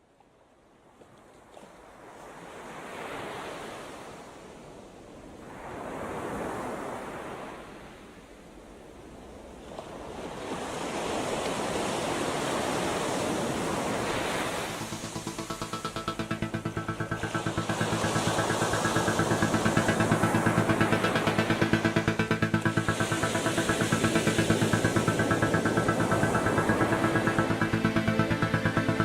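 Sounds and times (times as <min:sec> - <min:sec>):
sea waves breaking: 0:09.4 - 0:29.0.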